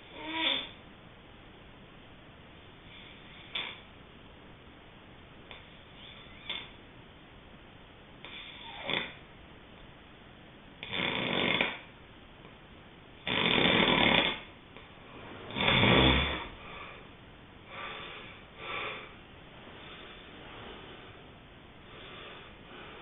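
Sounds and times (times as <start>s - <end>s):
person snoring: 10.8s - 11.8s, 13.2s - 14.5s, 15.5s - 17.0s.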